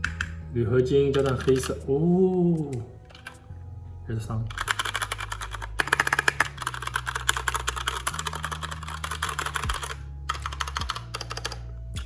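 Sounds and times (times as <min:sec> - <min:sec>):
mechanical keyboard typing: 0:00.0 - 0:00.4, 0:01.1 - 0:01.8, 0:04.5 - 0:11.6.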